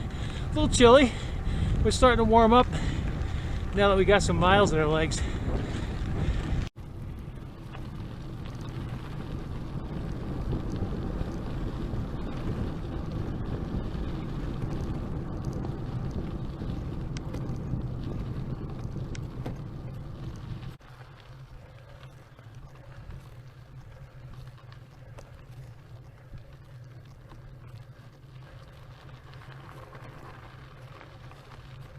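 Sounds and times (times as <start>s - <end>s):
bicycle tyres rolling: 0.0s - 31.9s
wind rumbling on microphone: 0.0s - 31.9s
faint ticks: 5.2s - 31.9s.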